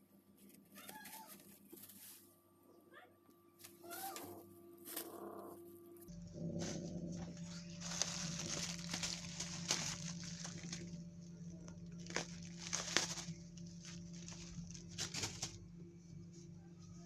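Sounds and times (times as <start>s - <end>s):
packaging rustling and crinkling: 0.4s - 2.3s, 6.5s - 15.7s
steady low hum: 1.4s - 17.0s.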